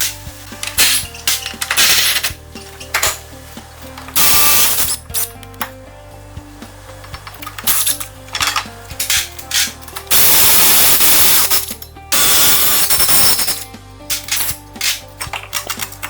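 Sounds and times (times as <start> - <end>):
loud air hissing: 0.0 - 5.4, 8.9 - 13.6
tools clicking and clattering: 0.0 - 5.8, 7.0 - 16.0.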